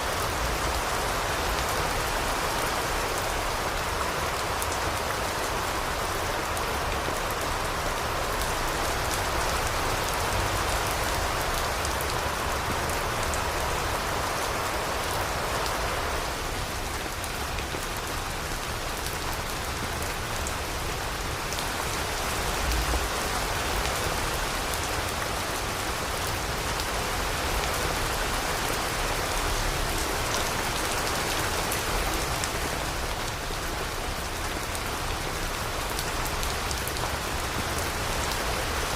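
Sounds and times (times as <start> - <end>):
steady rain hiss: 0.0 - 38.9.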